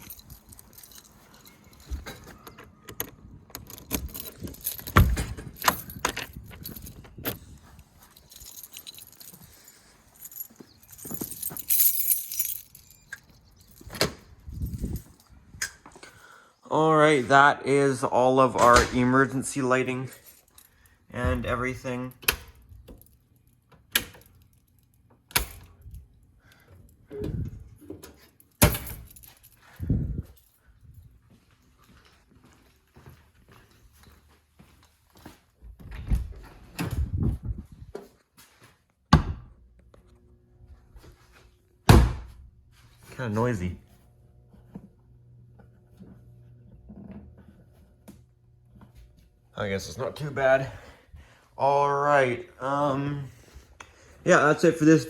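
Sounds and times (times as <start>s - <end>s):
metallic jangling and clicking: 0.0s - 15.4s, 20.0s - 27.1s, 28.0s - 31.1s.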